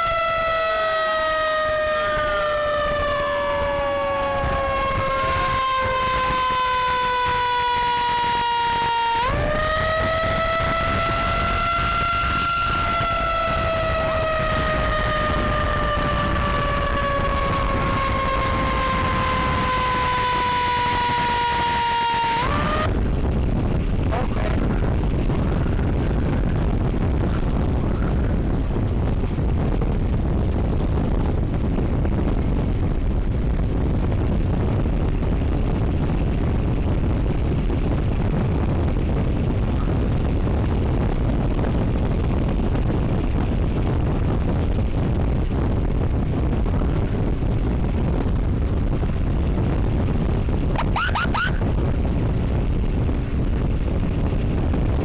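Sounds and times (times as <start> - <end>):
motorcycle road noise: 0.0 - 55.0
wind rush on microphone: 0.0 - 55.0.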